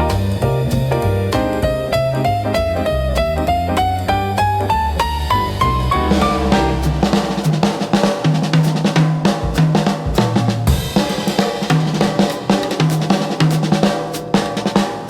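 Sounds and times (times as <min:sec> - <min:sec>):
lounge music: 0:00.0 - 0:08.3
bass line: 0:00.0 - 0:10.8
drum kit groove: 0:00.0 - 0:15.0.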